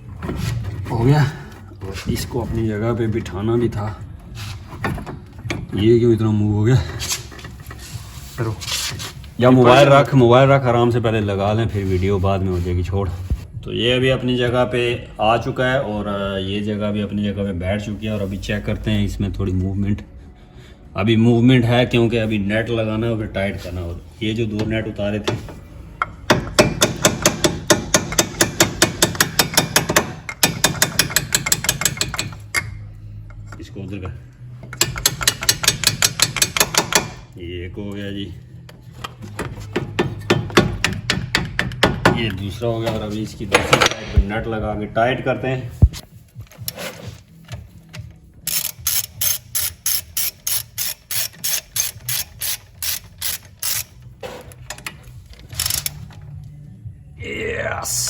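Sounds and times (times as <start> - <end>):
ratchet wrench clicking: 26.6 - 32.7, 34.7 - 37.2, 48.4 - 54.1, 55.5 - 56.1.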